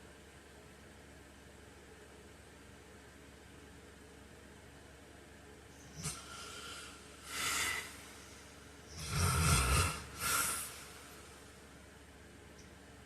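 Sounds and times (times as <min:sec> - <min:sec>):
man snoring: 0:05.9 - 0:08.2, 0:08.9 - 0:11.2
short breathy breath: 0:05.9 - 0:11.4.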